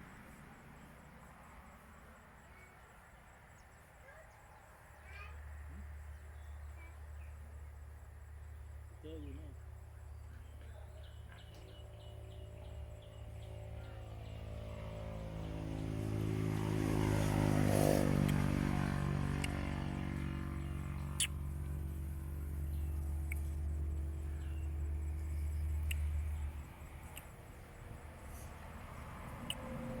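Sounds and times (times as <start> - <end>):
low engine hum: 9.6 - 30.0
motorcycle passing by: 11.4 - 30.0.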